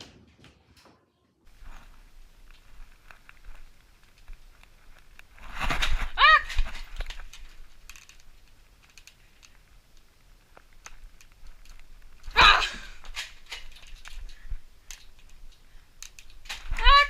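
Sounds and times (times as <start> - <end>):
short high cry: 12.4 - 12.9.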